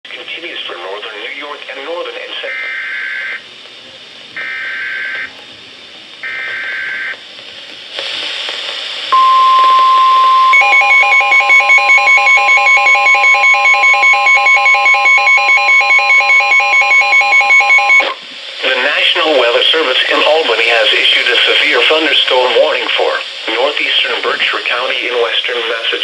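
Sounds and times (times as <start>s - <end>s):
steady warning alarm tone: 2.5s - 3.5s, 4.4s - 5.4s, 6.2s - 7.2s, 9.1s - 18.2s
rapid pulsing electronic beep: 9.2s - 18.0s.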